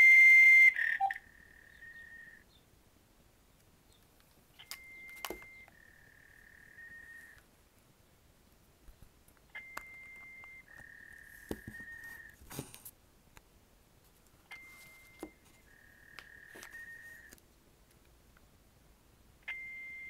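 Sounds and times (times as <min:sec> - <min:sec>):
voicemail beep and tone: 0:00.0 - 0:01.2, 0:04.6 - 0:05.7, 0:09.6 - 0:10.7, 0:19.5 - 0:20.0.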